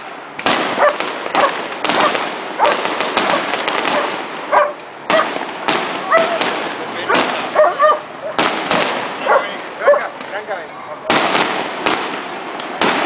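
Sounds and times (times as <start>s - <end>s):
fireworks bangs and crackles: 0.0s - 13.0s
dog barking: 0.8s - 5.3s, 6.1s - 6.4s, 7.1s - 8.4s, 9.2s - 10.2s.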